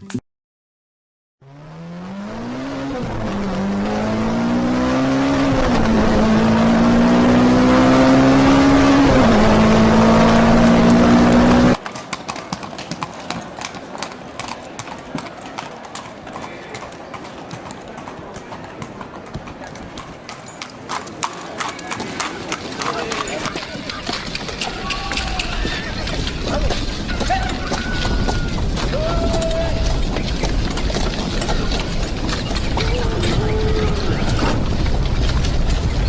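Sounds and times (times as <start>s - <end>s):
car engine accelerating: 1.4s - 11.8s
horse hooves on hard ground: 11.8s - 36.0s.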